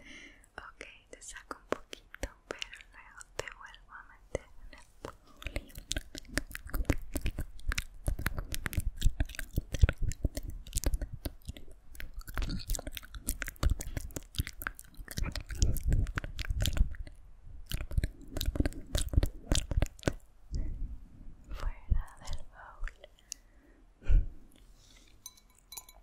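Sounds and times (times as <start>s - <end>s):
wet mouth clicks and smacks: 5.0s - 20.7s.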